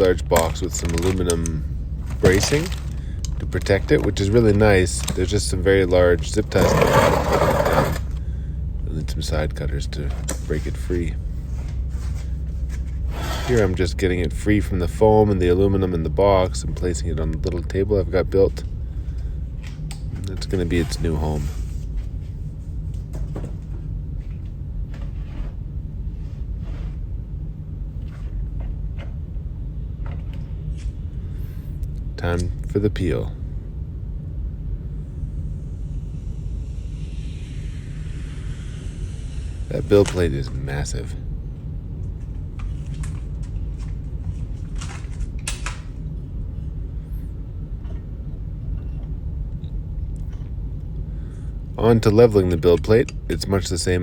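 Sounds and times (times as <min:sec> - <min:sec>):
faint rustles and clicks: 0:00.0 - 0:05.5
steady low hum: 0:00.0 - 0:54.0
steady low rumble: 0:00.0 - 0:54.0.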